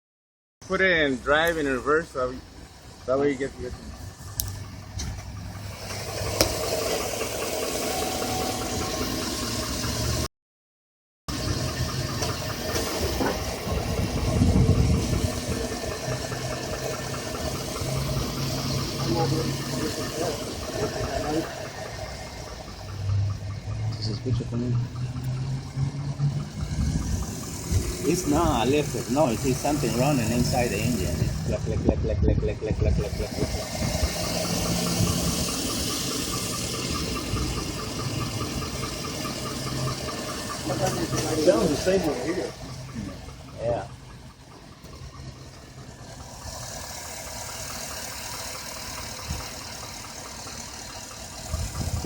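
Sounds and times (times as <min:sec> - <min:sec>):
car engine idling: 0:00.6 - 0:10.3, 0:11.3 - 0:52.0
rapid engine ticking: 0:00.6 - 0:10.3, 0:11.3 - 0:52.0
low rumble: 0:13.1 - 0:49.8.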